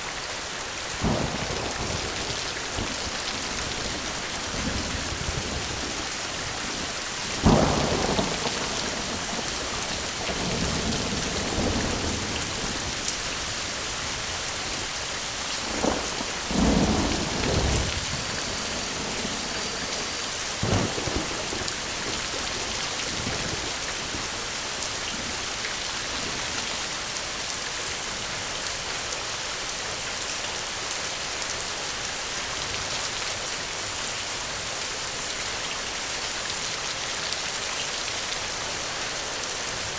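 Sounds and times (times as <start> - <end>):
steady rain falling: 0.0 - 39.9
thunder cracks and rumbles: 1.0 - 24.6.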